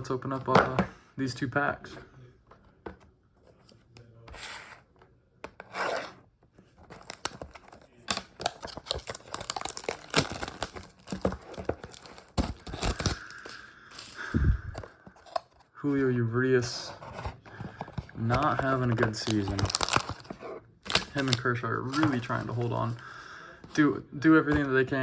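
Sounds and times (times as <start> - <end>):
card pack wrappers tearing: 6.9 - 14.3, 18.3 - 23.0.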